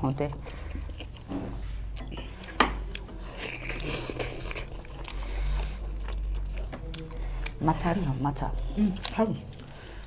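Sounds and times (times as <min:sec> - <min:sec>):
crisp chewing: 0:02.0 - 0:07.6.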